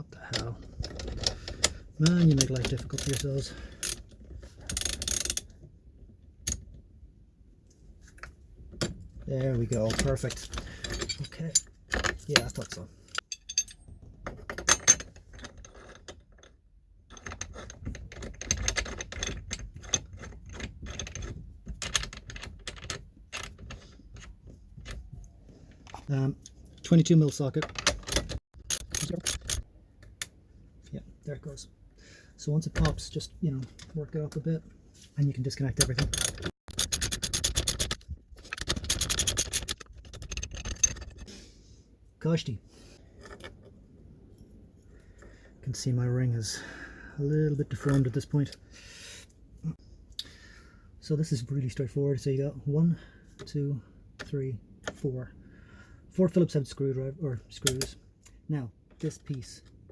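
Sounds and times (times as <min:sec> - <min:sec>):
metal tools clicking and clinking: 0:00.2 - 0:05.5, 0:08.2 - 0:25.1, 0:25.9 - 0:29.6, 0:35.6 - 0:41.3.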